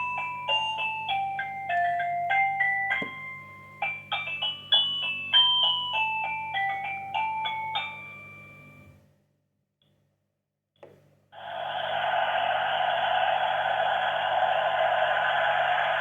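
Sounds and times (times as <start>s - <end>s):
chime-like ringtone melody: 0.0s - 9.0s.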